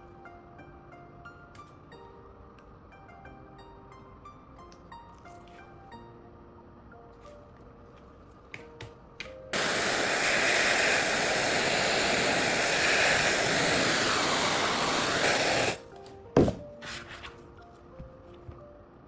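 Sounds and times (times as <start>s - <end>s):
air hissing: 9.5s - 15.9s.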